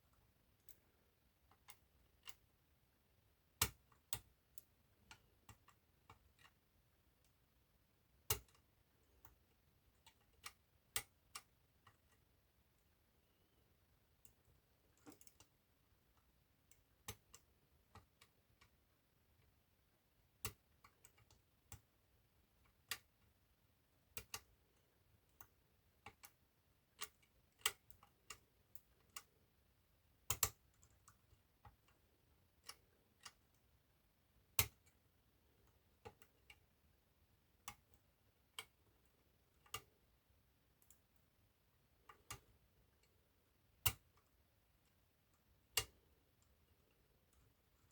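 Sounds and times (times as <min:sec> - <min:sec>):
small metallic clicks of lock picking: 0:30.3 - 0:31.3.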